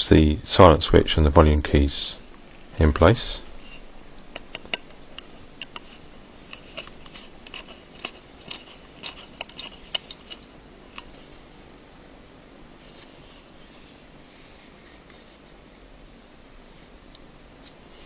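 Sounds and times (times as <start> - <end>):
small screwdriver clicking on screws: 6.5 - 11.1.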